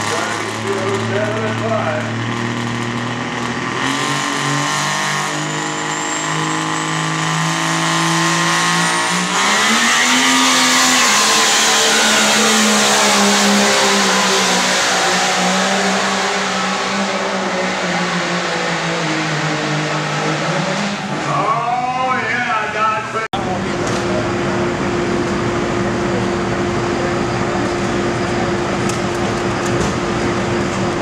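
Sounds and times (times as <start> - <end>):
high whine: 0.0 - 4.6
diesel engine under full load: 0.0 - 31.0.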